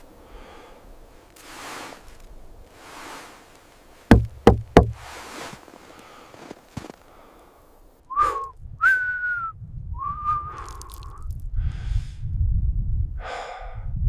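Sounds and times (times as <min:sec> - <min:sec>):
whistle-like tones: 0:08.1 - 0:11.3.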